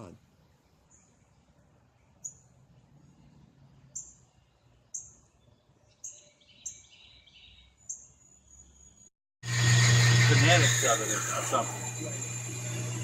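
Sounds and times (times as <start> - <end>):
small bird chirping: 0.8 - 2.7, 3.7 - 9.1
faint bird twitter: 0.8 - 9.1.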